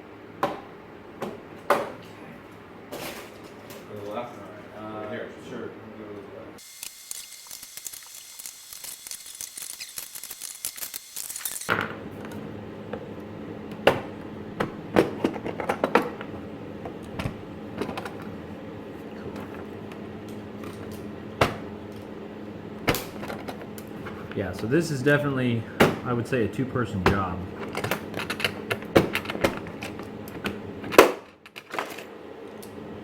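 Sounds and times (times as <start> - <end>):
steady hiss: 6.6 - 11.7.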